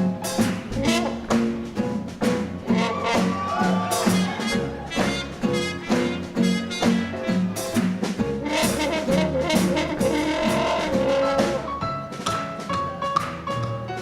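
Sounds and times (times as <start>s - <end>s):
swing jazz band playing: 0.0s - 14.0s
trombones and trumpets: 0.7s - 1.6s, 2.6s - 11.8s.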